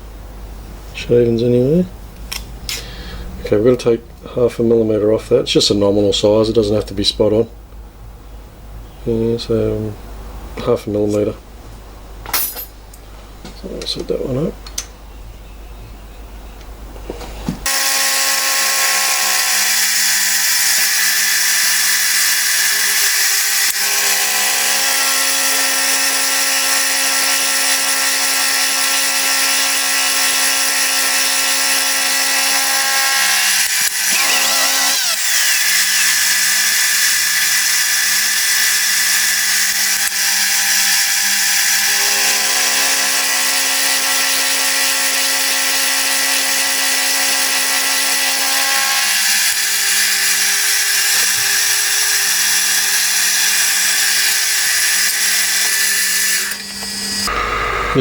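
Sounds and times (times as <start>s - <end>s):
metal-cutting machine hum: 17.7s - 58.0s.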